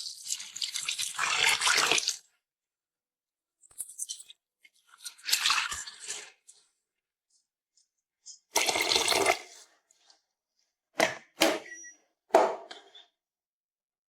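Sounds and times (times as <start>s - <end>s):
water pouring: 0.0s - 2.3s, 3.8s - 6.7s, 8.5s - 9.7s.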